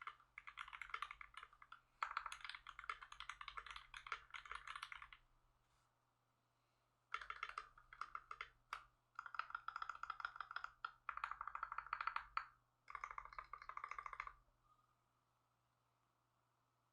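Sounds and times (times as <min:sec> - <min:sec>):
fast mechanical keyboard typing: 0:00.0 - 0:05.2, 0:07.1 - 0:14.4.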